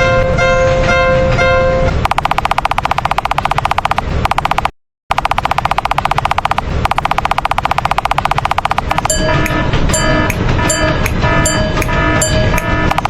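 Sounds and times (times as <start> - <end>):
fast rattle of sharp clicks: 2.0 - 9.6, 11.8 - 13.0.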